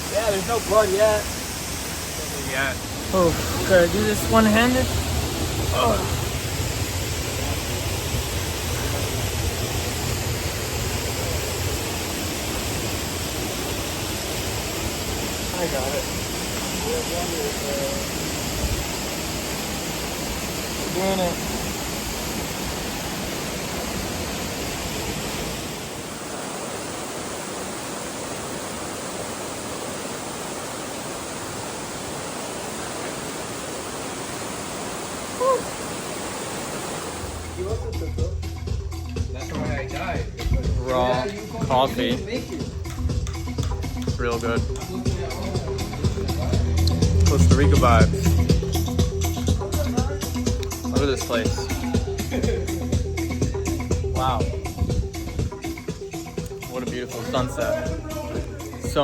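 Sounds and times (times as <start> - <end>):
waterfall rushing: 0.0 - 37.8.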